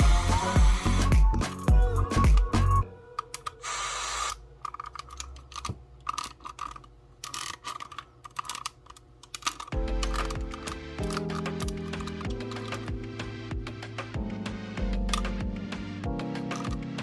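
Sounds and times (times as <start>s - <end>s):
music: 0.0s - 3.1s, 9.7s - 17.0s
tape mechanism whine: 3.1s - 5.7s.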